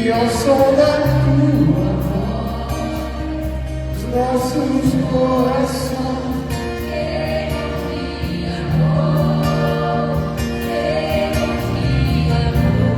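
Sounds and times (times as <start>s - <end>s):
voices singing worship song: 0.0s - 12.9s.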